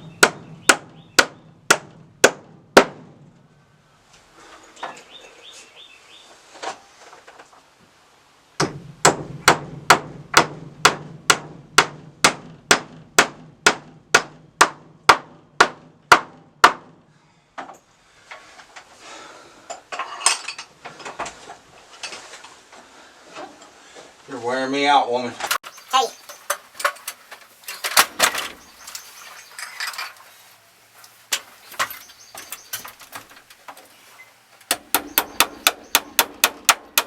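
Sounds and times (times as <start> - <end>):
hammer driving nail into wood: 34.7 - 37.0.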